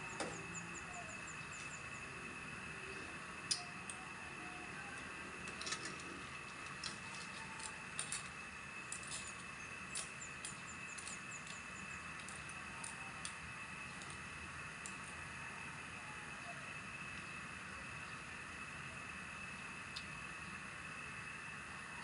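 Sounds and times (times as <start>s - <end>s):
clams cooking with hiss and pops: 0.2s - 16.0s.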